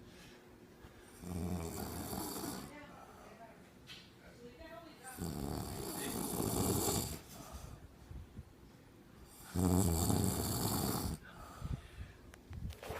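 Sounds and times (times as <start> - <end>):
woman snoring: 1.2 - 2.7, 5.1 - 7.2, 9.4 - 11.2.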